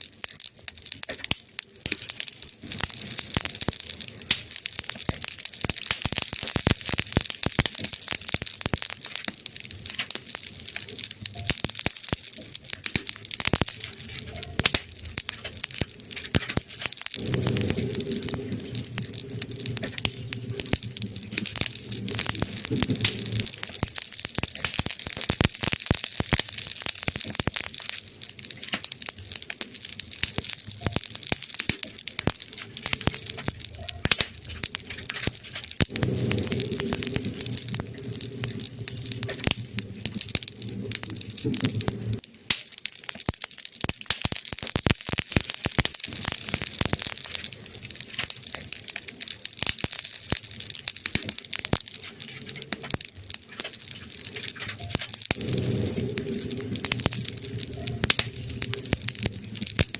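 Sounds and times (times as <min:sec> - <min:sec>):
campfire crackling and popping: 0:00.0 - 0:59.9
low rumble: 0:16.9 - 0:24.0, 0:32.2 - 0:42.2, 0:54.8 - 0:59.9.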